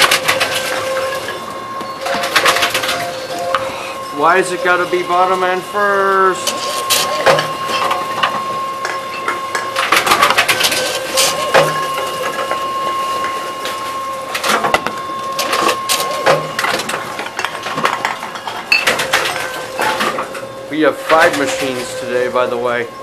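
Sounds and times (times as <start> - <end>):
plastic bottles clattering: 0.0 - 3.7, 6.3 - 12.6, 14.4 - 20.4
machine whine: 0.0 - 23.0.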